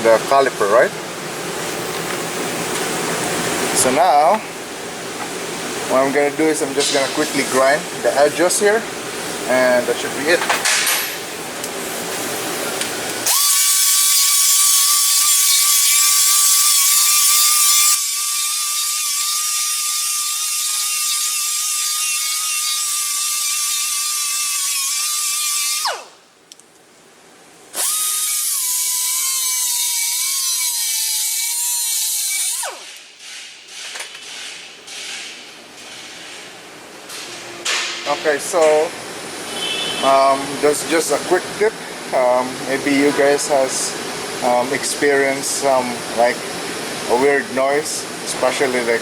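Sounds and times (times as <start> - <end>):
power grinder whining: 13.2 - 26.1.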